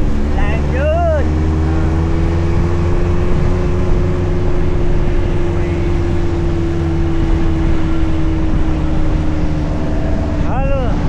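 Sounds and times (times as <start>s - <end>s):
engine droning with whine: 0.0s - 11.0s.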